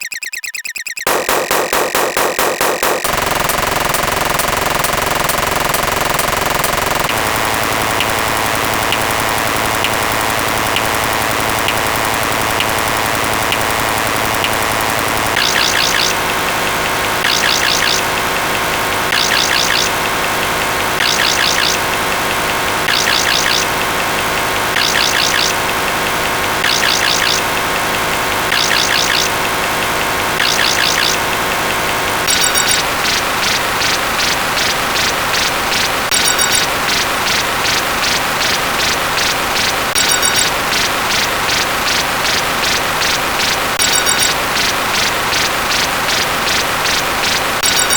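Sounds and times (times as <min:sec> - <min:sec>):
bright chirping bursts: 0:00.0 - 0:01.2, 0:24.7 - 0:25.6, 0:26.6 - 0:27.5, 0:32.3 - 0:47.9.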